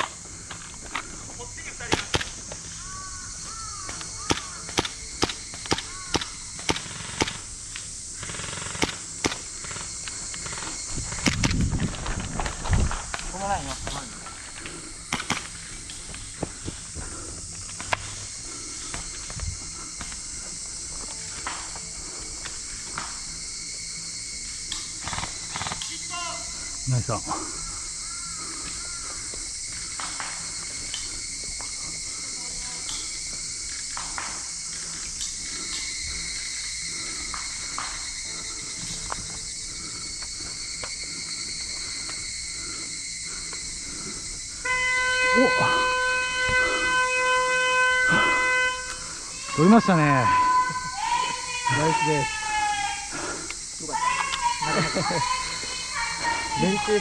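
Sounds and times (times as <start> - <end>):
high-pitched insect drone: 0.0 - 57.0
sharp clicks: 1.9 - 2.6, 3.8 - 11.7.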